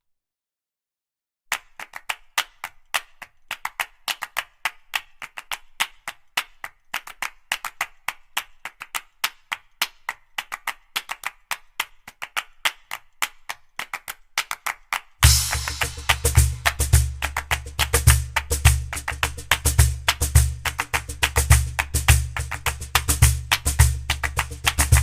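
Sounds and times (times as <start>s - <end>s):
rhythmic clapping percussion: 1.5s - 25.0s
music beat with heavy bass: 15.2s - 25.0s.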